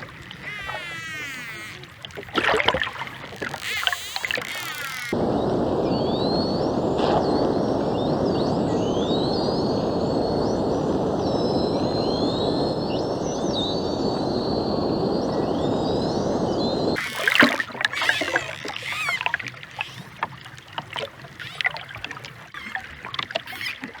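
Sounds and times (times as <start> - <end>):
underwater water rush: 0.0 - 24.0
dolphin echolocation clicks: 2.4 - 5.2
dolphin whistles: 3.5 - 17.4.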